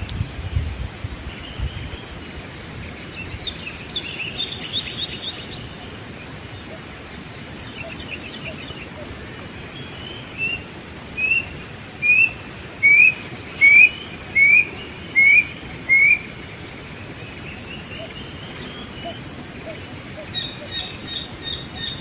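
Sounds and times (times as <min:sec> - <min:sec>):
bird whistling rising notes: 0:12.0 - 0:16.3.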